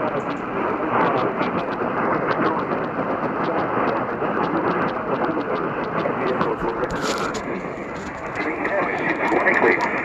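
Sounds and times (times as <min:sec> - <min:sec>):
radio static hiss with crackles: 0:00.0 - 0:10.0.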